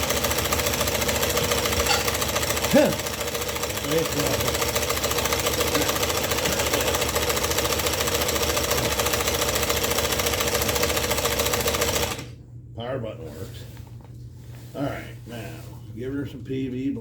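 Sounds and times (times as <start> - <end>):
scroll saw running: 0.0 - 12.3.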